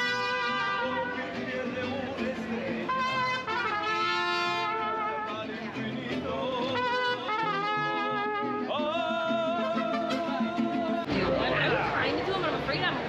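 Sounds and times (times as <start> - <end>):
trumpets playing held notes: 0.0 - 1.2, 2.9 - 5.5, 6.8 - 8.7.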